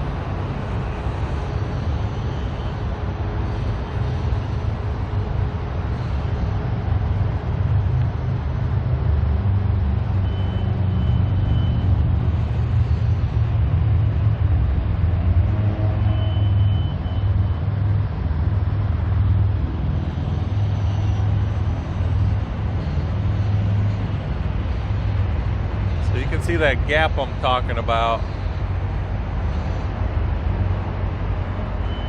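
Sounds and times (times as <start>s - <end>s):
low outdoor rumble: 0.0s - 31.9s.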